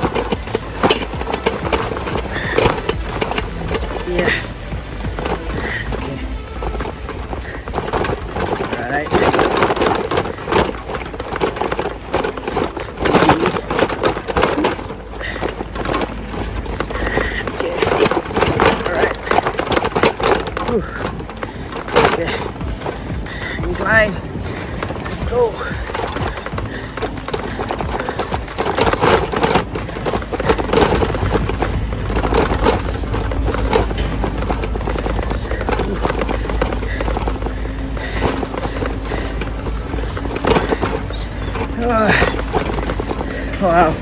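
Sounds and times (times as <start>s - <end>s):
short crackles: 0.0s - 44.0s
tyres crunching over dirt trail: 0.0s - 44.0s
low rumble: 29.6s - 44.0s.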